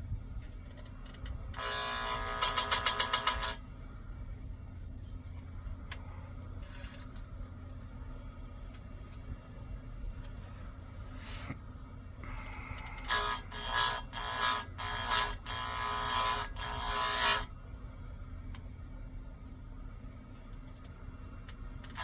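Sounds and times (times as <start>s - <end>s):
grinder wheel screeching on metal: 1.6s - 3.6s, 12.3s - 17.5s.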